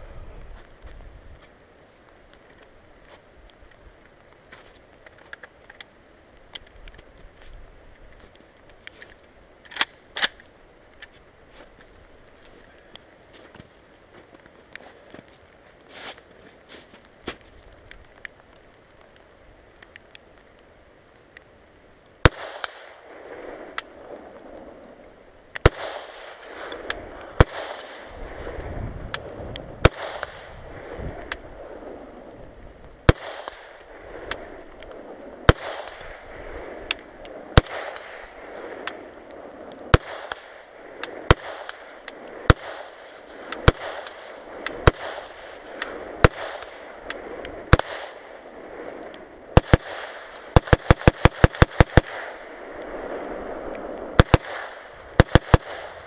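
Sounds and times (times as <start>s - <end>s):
faint clicks: 17.7s - 22.8s.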